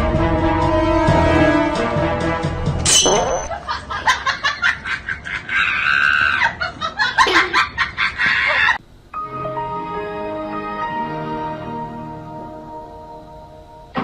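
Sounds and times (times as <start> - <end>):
people laughing hard: 3.5 - 8.8.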